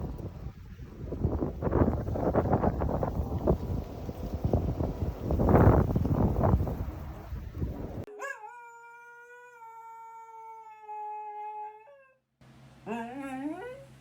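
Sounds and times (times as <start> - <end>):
wind noise on microphone: 0.0 - 8.1
dog howling: 8.1 - 12.2, 12.9 - 13.9.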